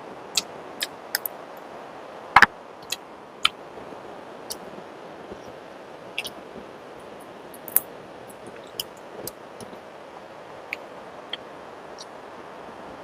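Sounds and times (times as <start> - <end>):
steady background hiss: 0.0 - 13.0.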